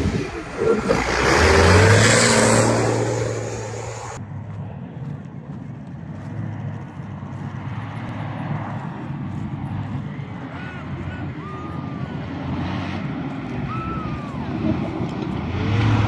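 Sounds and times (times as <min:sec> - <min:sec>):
rally car engine driving past: 0:00.0 - 0:04.2, 0:12.2 - 0:16.0
muffled engine running: 0:00.0 - 0:16.0.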